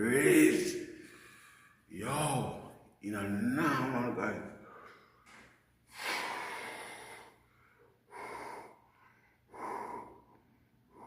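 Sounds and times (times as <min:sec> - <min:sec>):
man breathing heavily: 0:04.6 - 0:11.0.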